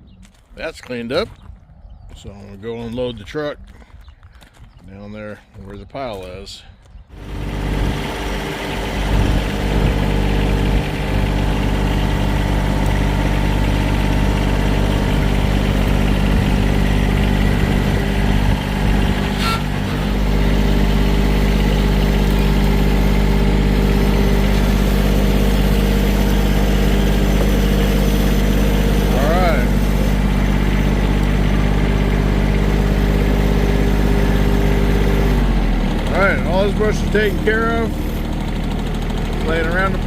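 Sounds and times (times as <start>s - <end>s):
vehicle engine running: 7.1s - 40.0s.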